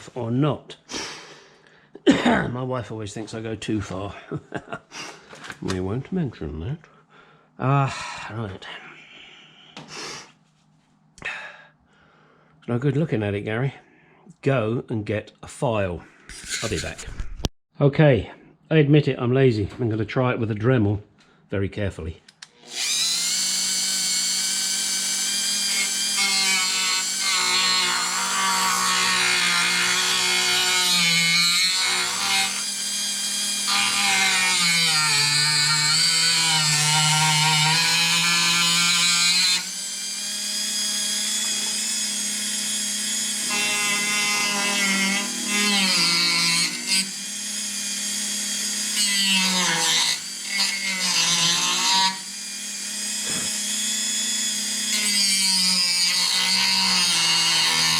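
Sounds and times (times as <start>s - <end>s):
rotary tool grinding: 16.3s - 17.3s, 22.4s - 57.9s.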